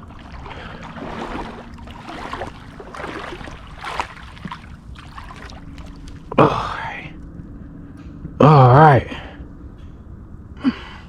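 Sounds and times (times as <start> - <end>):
river water splashing: 0.0 - 7.3.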